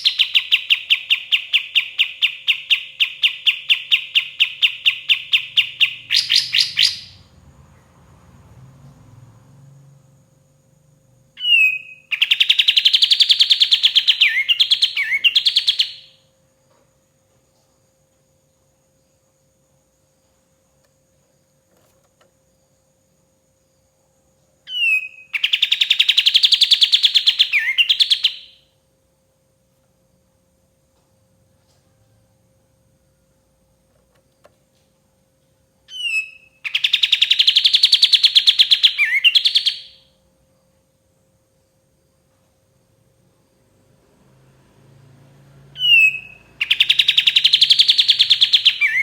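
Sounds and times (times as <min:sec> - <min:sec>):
bird singing fast trills: 0:00.0 - 0:07.3, 0:11.3 - 0:16.2, 0:24.7 - 0:28.7, 0:35.9 - 0:40.1, 0:45.7 - 0:49.0
faint steady hum: 0:00.0 - 0:49.0.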